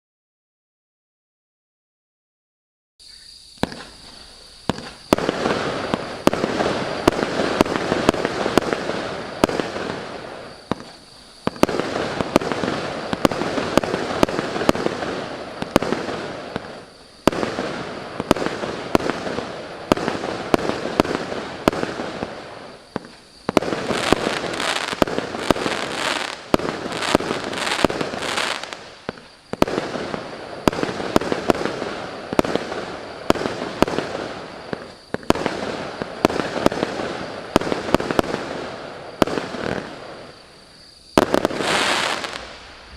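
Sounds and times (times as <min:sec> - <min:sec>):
dense rushing noise: 0:42.4 - 0:42.9.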